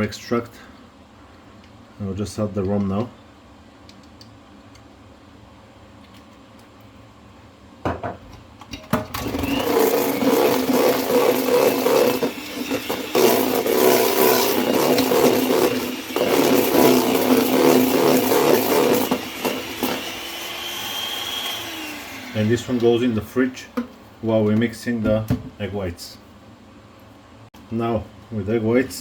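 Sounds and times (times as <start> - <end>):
electric hand mixer beating: 9.1 - 23.2.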